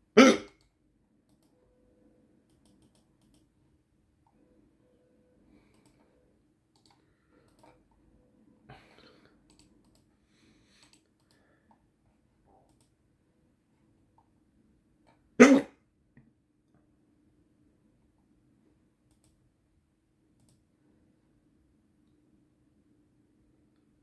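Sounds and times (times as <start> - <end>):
faint scattered clicks: 0.5 - 1.6, 2.5 - 3.5, 5.6 - 6.1, 6.7 - 8.0, 9.4 - 10.1, 10.8 - 11.9, 12.6 - 13.0, 19.0 - 19.5, 20.4 - 20.7.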